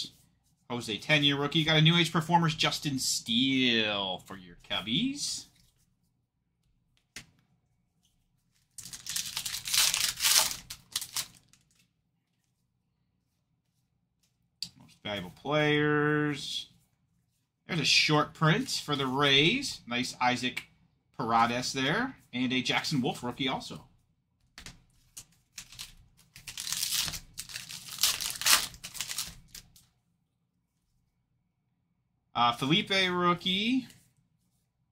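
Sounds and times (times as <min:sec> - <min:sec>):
wrapper tearing and crinkling: 0:08.8 - 0:11.8, 0:25.6 - 0:29.7.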